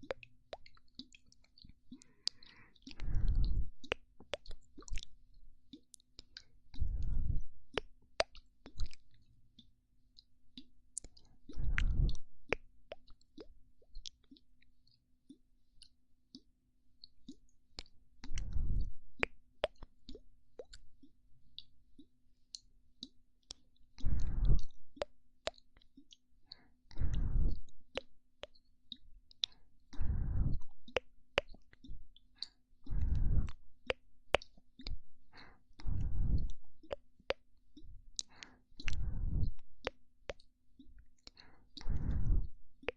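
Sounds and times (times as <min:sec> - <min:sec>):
wet mouth clicks and pops: 0:00.0 - 0:42.9
breath puffs into microphone: 0:02.2 - 0:03.8, 0:11.6 - 0:12.3, 0:24.0 - 0:24.8, 0:27.0 - 0:27.7, 0:30.0 - 0:30.7, 0:32.9 - 0:33.6, 0:35.3 - 0:36.6, 0:38.3 - 0:39.6, 0:41.4 - 0:42.6.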